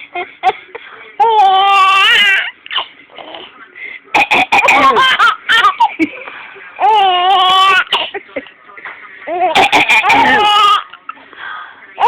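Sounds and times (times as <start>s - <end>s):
baby laughing: 4.2s - 6.1s, 6.8s - 8.2s, 9.3s - 11.0s.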